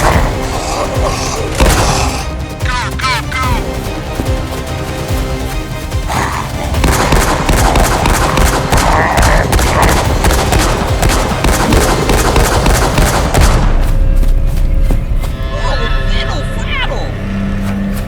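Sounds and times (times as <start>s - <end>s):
film background music: 0.0s - 18.0s
rapid gunfire: 6.7s - 13.9s.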